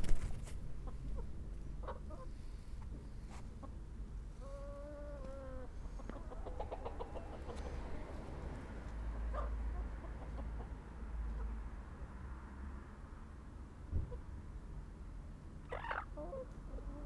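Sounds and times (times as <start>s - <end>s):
chickens clucking: 0.0s - 11.8s.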